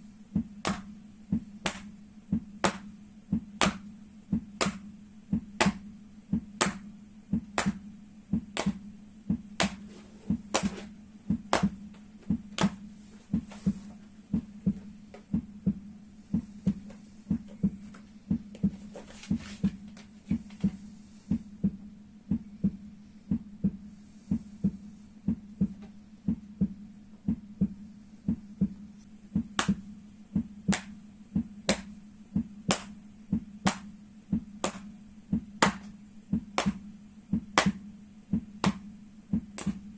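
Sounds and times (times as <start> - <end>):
steady low hum: 0.0 - 39.9
slaps on soles of feet: 0.4 - 15.8, 29.4 - 39.9.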